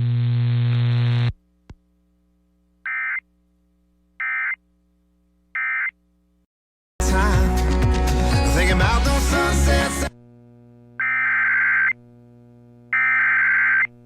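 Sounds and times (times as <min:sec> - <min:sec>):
electronic buzzing hum: 0:00.0 - 0:06.5, 0:10.0 - 0:14.0.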